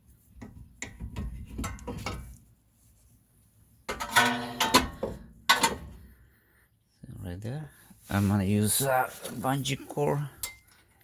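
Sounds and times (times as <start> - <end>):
metallic knocks and rattles: 3.9 - 6.0.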